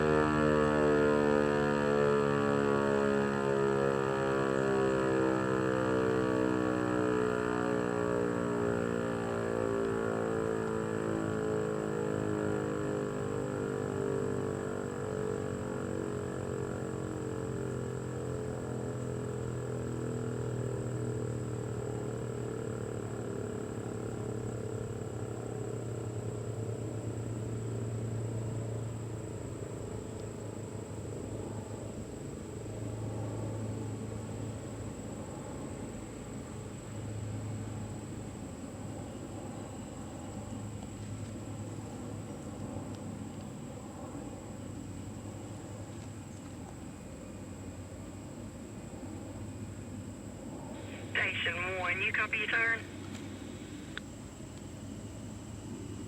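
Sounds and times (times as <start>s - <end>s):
warning siren winding down: 0.0s - 16.6s.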